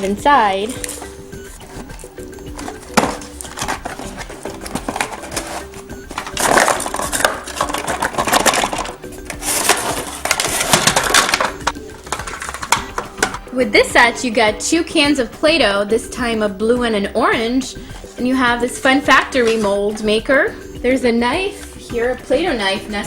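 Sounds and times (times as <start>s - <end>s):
packaging crinkling and crackling: 0.0s - 13.5s
light background music: 0.0s - 23.0s.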